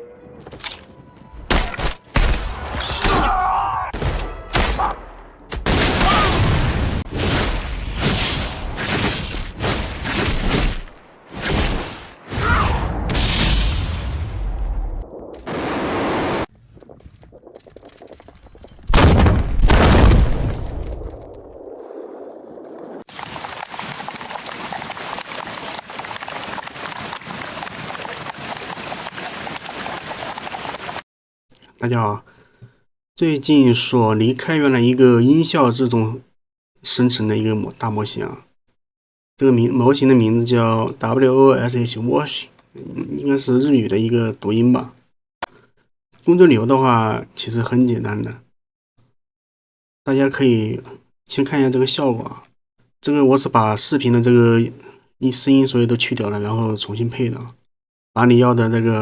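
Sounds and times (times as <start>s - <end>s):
sharp bangs and thuds: 3.9s - 14.6s, 18.8s - 21.1s
explosion booms: 18.9s - 21.2s.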